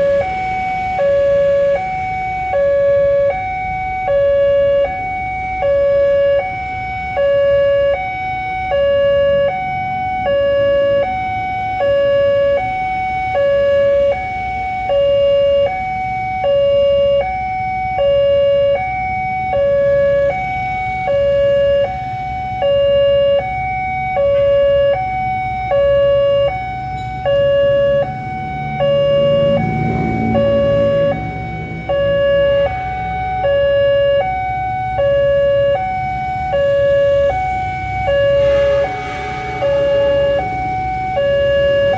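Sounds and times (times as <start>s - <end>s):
two-tone level crossing alarm: 0.0s - 41.9s
low rumble: 27.2s - 41.9s.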